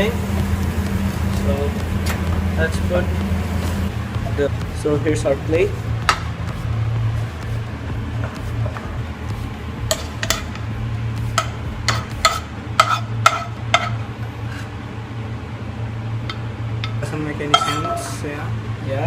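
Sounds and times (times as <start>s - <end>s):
low hum: 0.0s - 19.0s
metal utensil clinking dishware: 17.5s - 18.2s.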